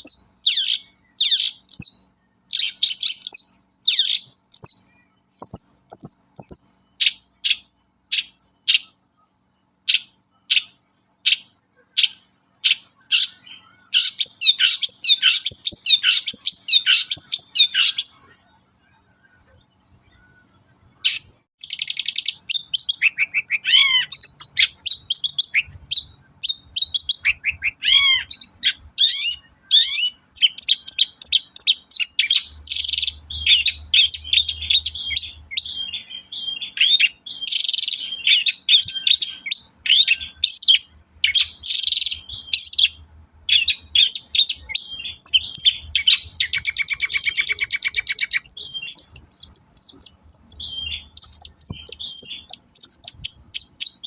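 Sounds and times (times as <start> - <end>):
rapid buzzing bird trill: 0.0 - 9.2, 9.8 - 18.3, 21.0 - 54.0
harsh bird chattering: 9.8 - 18.2, 21.0 - 54.0
bird singing whistles and chips: 21.1 - 54.0.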